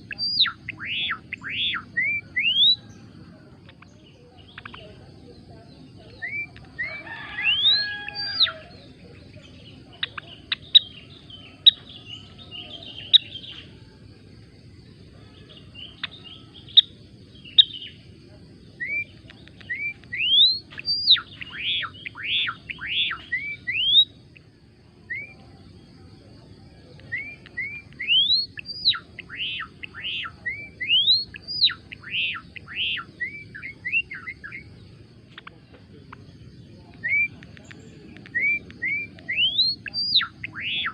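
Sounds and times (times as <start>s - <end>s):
finch singing whistles and chirps: 0.0s - 2.9s, 6.1s - 13.7s, 18.8s - 24.2s, 25.1s - 25.4s, 27.0s - 34.7s, 36.8s - 40.9s
low background noise: 0.0s - 40.9s.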